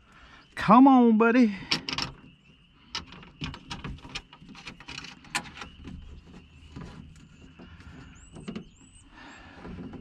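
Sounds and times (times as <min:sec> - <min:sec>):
car door parts clicking and knocking: 0:01.7 - 0:02.3.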